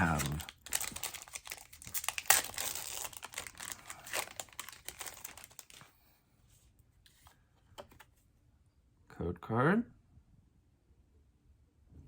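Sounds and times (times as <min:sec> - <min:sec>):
foil wrapper crinkling and tearing: 0:00.0 - 0:05.9.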